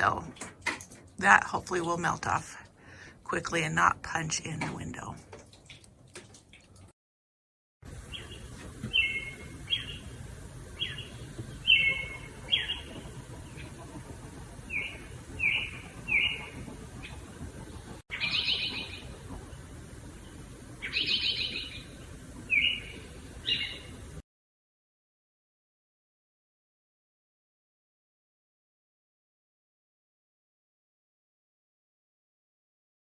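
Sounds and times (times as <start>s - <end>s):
harsh buzzy bird calls: 20.8s - 24.0s.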